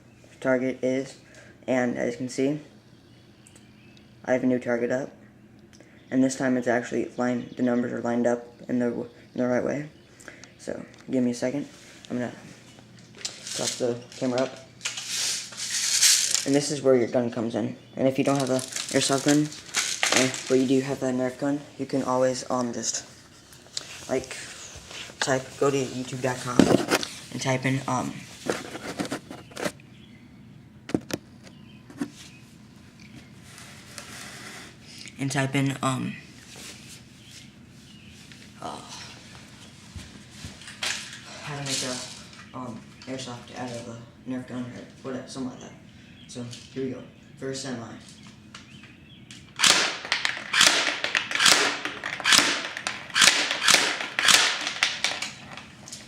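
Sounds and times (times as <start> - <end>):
airsoft gun shots: 49.6 - 55.0.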